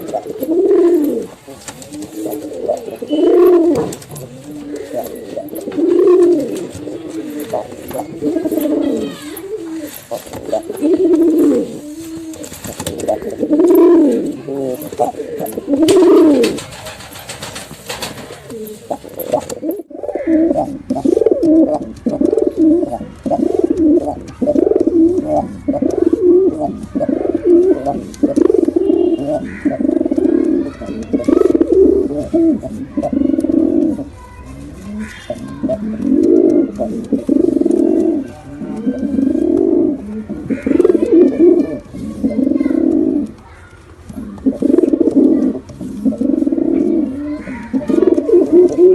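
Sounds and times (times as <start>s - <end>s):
background hiss: 0.0s - 30.6s
pigeons cooing: 0.0s - 48.9s.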